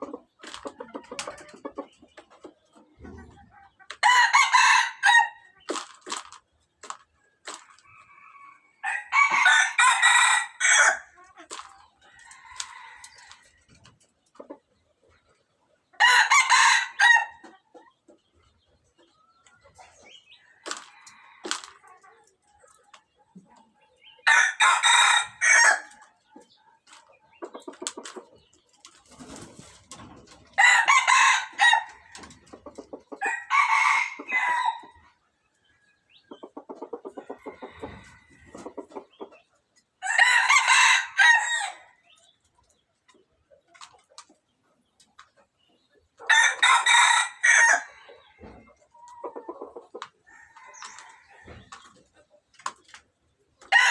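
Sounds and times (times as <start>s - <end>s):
soft clucking calls: 0.0s - 4.1s
rooster crowing: 33.2s - 34.9s.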